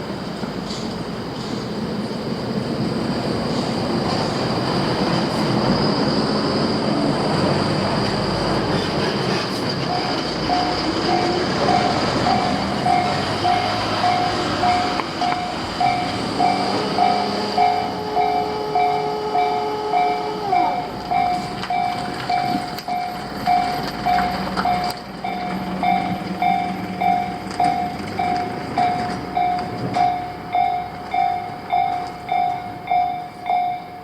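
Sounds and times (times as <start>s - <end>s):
train rumbling on rails: 0.0s - 34.0s
level crossing warning bell: 9.9s - 34.0s.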